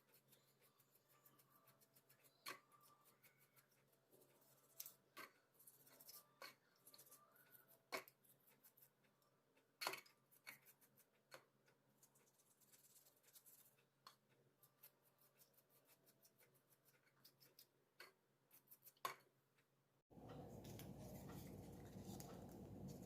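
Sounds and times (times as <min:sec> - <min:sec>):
small parts and tools clicking: 0:00.0 - 0:19.7
faint low hum: 0:20.1 - 0:23.0.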